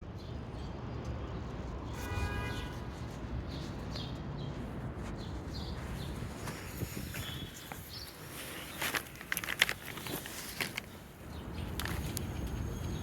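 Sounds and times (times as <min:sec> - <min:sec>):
birds chirping: 0:03.5 - 0:13.0.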